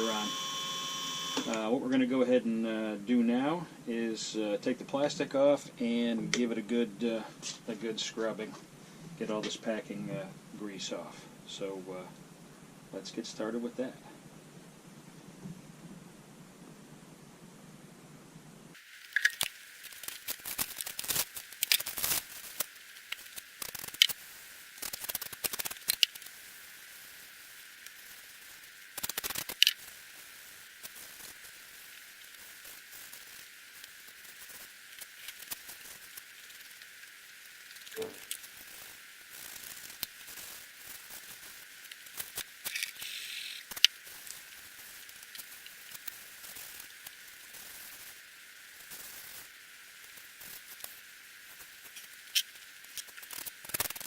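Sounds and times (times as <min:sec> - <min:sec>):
plastic sheeting peeled and crinkled: 0:19.2 - 0:54.0.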